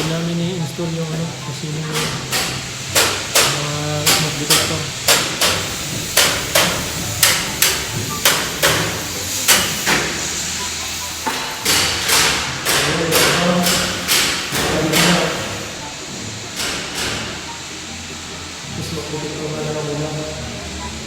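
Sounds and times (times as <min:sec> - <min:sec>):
hammer blows: 0:02.0 - 0:15.8.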